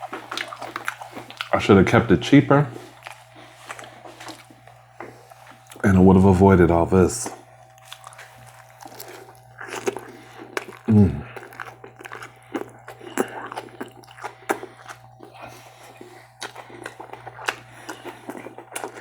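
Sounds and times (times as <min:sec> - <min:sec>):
person chewing food: 0:00.0 - 0:01.7, 0:02.7 - 0:06.4, 0:07.2 - 0:19.0
person humming: 0:10.9 - 0:11.4.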